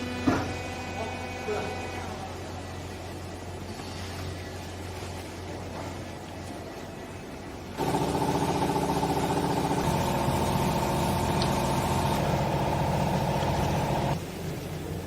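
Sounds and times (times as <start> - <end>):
hydraulic pump motor running: 7.8 - 14.2.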